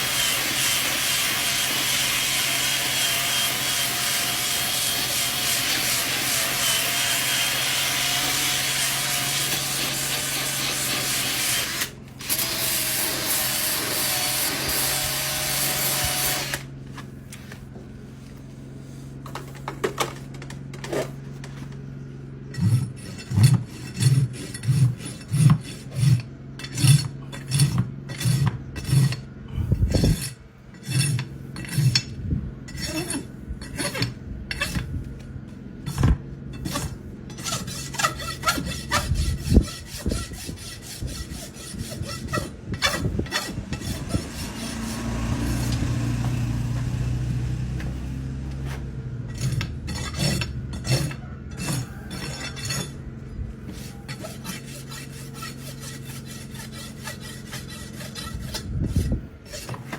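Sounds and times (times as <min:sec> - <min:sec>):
rasp scraping a hoof: 0:00.0 - 0:59.9
steady low hum: 0:15.6 - 0:59.9.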